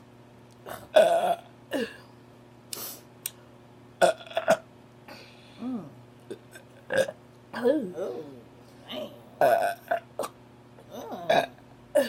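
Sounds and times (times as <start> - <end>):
person burping: 0.7 - 2.0, 4.0 - 4.6, 5.6 - 8.3, 9.4 - 12.0
breathy noises: 5.1 - 6.0.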